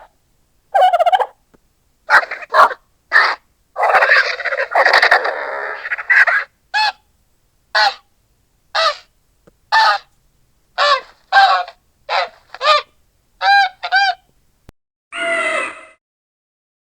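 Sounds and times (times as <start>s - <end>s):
creature honking calls: 0.8s - 1.4s, 2.1s - 7.0s, 7.8s - 8.1s, 8.8s - 9.1s, 9.7s - 10.1s, 10.8s - 14.3s.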